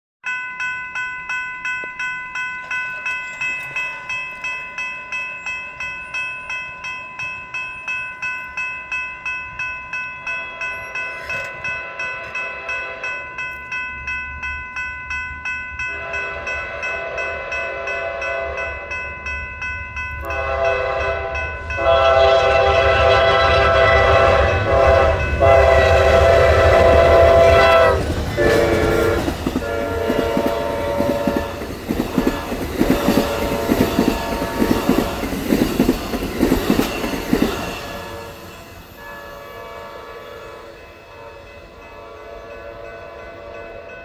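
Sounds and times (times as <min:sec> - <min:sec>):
railroad crossing bell dinging: 0:00.2 - 0:44.0
train rumble: 0:09.3 - 0:44.0
locomotive horn blasts: 0:15.9 - 0:18.7, 0:20.2 - 0:34.8, 0:37.9 - 0:43.6.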